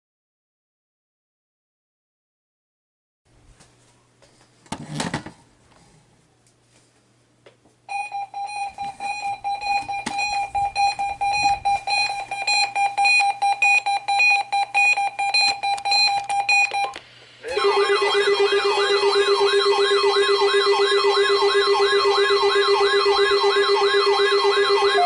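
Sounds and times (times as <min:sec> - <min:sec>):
pulsing electronic alert beep: 0:17.6 - 0:25.0.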